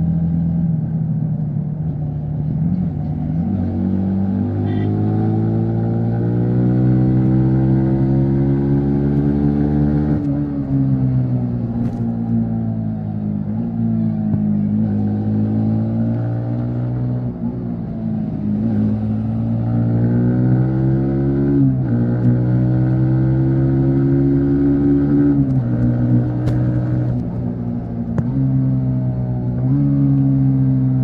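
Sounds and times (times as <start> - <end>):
motorcycle engine accelerating: 1.6 - 31.0.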